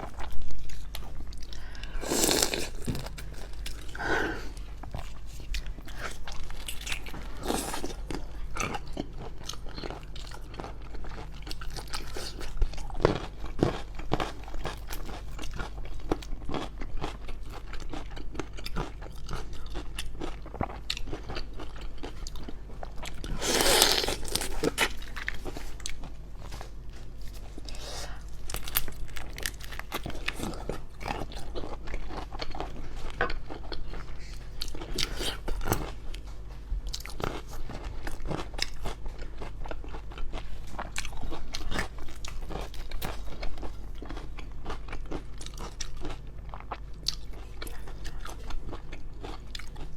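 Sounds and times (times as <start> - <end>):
shrimp being crunched and chewed: 4.8 - 26.6, 27.2 - 36.2.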